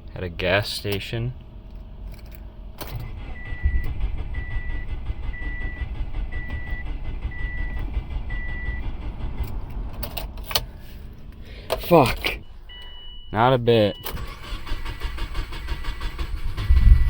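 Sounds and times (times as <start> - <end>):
steady low rumble: 0.0 - 14.0, 14.6 - 17.0
car warning chime beeping: 3.1 - 8.9, 11.7 - 16.2.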